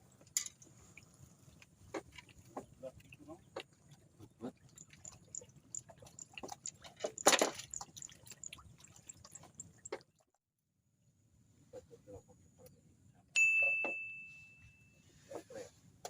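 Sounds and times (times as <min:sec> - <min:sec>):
water dripping: 0:00.2 - 0:10.4.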